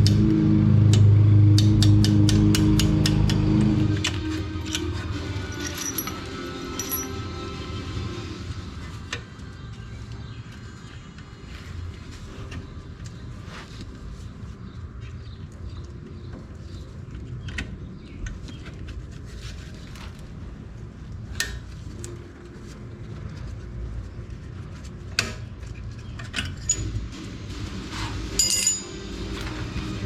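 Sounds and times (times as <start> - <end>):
metal tools clinking: 4.0 - 7.4, 26.2 - 27.0, 28.3 - 29.6.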